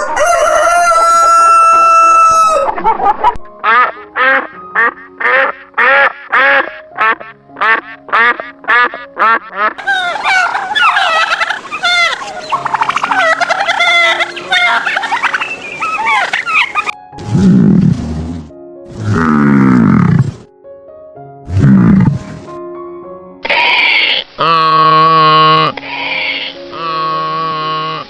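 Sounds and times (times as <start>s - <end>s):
rooster crowing: 0.0s - 2.8s, 9.8s - 11.4s
flock of ducks quacking: 3.6s - 17.0s, 23.5s - 28.0s
duck quacking: 3.6s - 20.4s, 21.5s - 22.5s, 23.5s - 28.0s.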